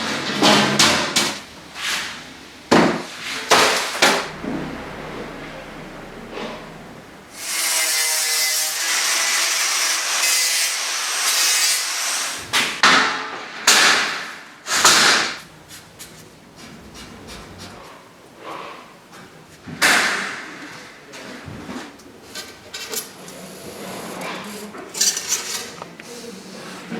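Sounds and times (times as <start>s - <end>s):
harsh steel cutting noise: 1.6s - 12.4s.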